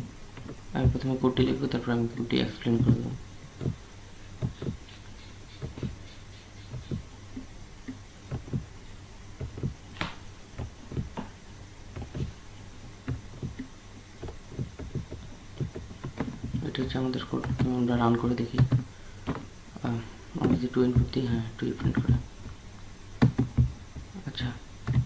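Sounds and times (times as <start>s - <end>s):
low electrical hum: 0.0s - 25.0s
keyboard and mouse clicks: 9.4s - 22.6s, 23.2s - 24.1s.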